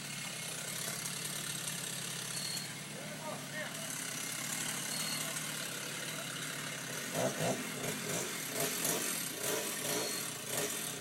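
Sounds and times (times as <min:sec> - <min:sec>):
chainsaw cutting wood: 0:06.3 - 0:11.0.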